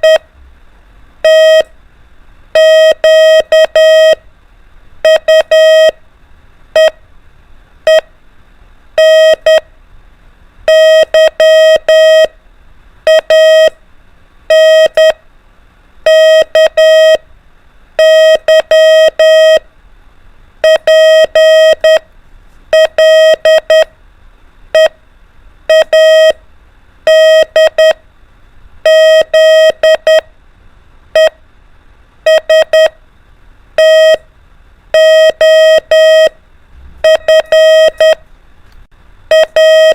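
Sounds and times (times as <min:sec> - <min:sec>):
morse code practice beeps: 0:00.0 - 0:00.3, 0:01.2 - 0:01.7, 0:02.6 - 0:04.2, 0:05.0 - 0:06.0, 0:06.8 - 0:07.0, 0:09.0 - 0:09.6, 0:10.7 - 0:12.3, 0:13.1 - 0:13.7, 0:14.5 - 0:15.2, 0:16.1 - 0:17.2, 0:18.0 - 0:19.6, 0:20.6 - 0:22.0, 0:22.7 - 0:23.9, 0:25.7 - 0:26.4, 0:27.1 - 0:28.0, 0:28.8 - 0:30.3, 0:31.2 - 0:31.4, 0:32.3 - 0:33.0, 0:33.8 - 0:34.2, 0:34.9 - 0:36.4, 0:37.0 - 0:38.2, 0:39.3 - 0:39.9.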